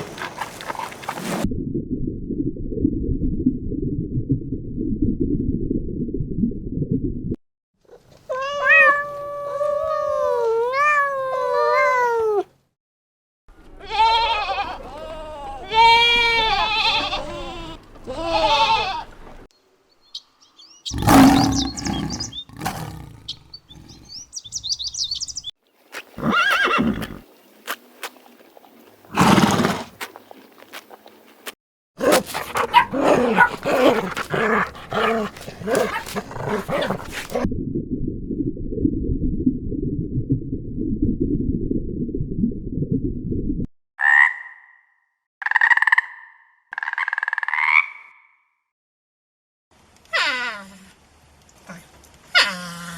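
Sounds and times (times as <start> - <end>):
animal harsh roars: 20.9 - 24.2, 32.0 - 37.5
animal wailing calls: 20.9 - 24.2, 32.0 - 37.4
rapid animal calls: 20.9 - 25.1, 32.0 - 37.4.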